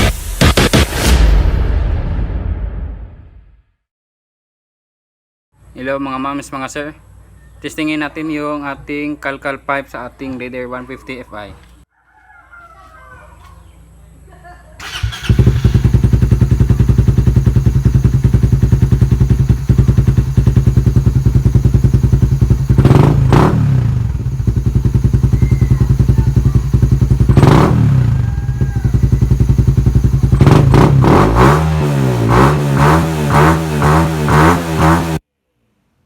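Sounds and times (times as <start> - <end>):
motorcycle engine revving: 14.8 - 35.2.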